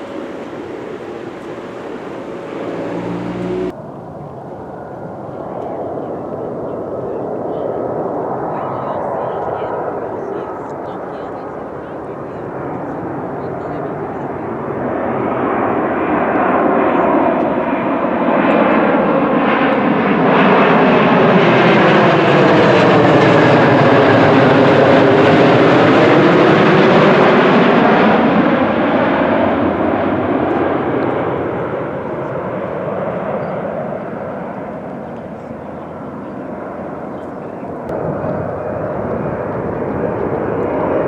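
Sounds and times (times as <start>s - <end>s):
airliner engine noise: 0.0s - 41.0s.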